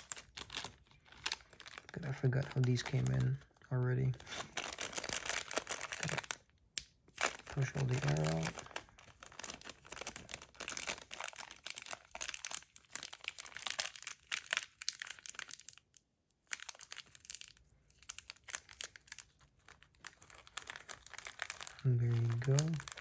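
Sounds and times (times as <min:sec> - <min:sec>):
plastic bags crinkling: 0:00.0 - 0:06.5, 0:07.1 - 0:15.9, 0:16.5 - 0:23.0.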